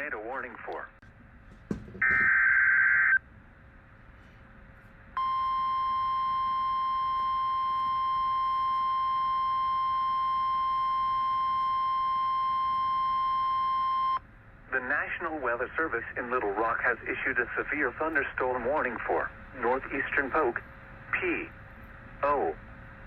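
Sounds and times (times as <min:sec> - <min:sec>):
steady warning alarm tone: 0:05.2 - 0:14.2.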